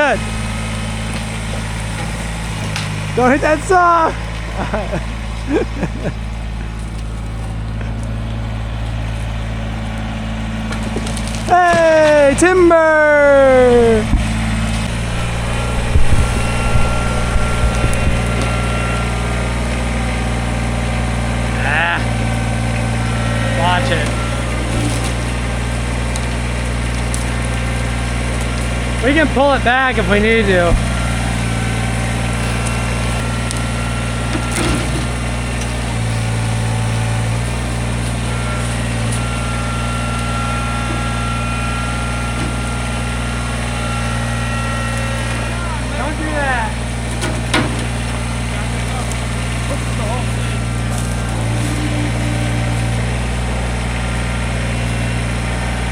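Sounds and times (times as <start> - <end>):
falling tree thumps and cracks: 0.0 - 3.2, 10.6 - 12.3, 30.6 - 39.2
tractor diesel engine running: 0.0 - 55.9.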